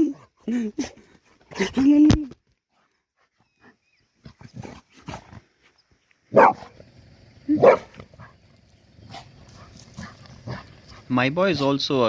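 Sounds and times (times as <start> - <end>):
dog barking: 6.3 - 6.7, 7.5 - 8.3.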